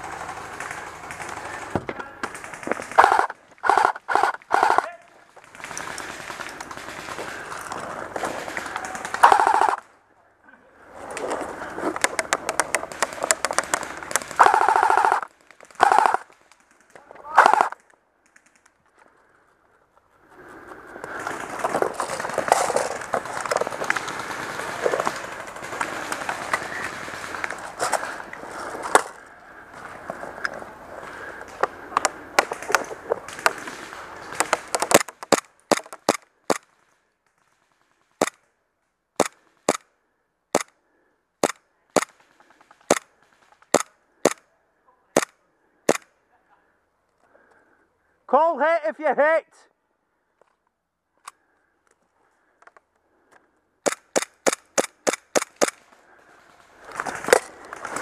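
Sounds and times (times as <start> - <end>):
dense noise: 0.0 - 10.0, 10.6 - 17.8, 20.4 - 36.1
scattered clicks: 0.2 - 9.9, 11.9 - 19.1, 34.3 - 37.6, 39.2 - 39.9, 40.5 - 40.8, 41.4 - 44.5, 52.6 - 56.0
airsoft gun shots: 2.9 - 4.9, 9.2 - 9.8, 14.4 - 16.2, 17.3 - 17.8.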